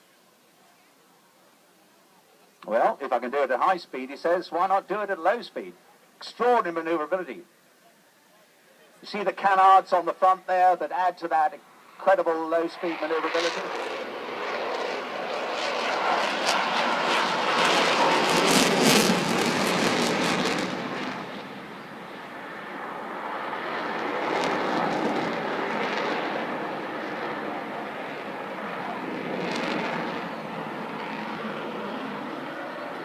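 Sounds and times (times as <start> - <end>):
jet engines roaring: 9.0 - 33.0
jet engine crackle: 11.8 - 33.0.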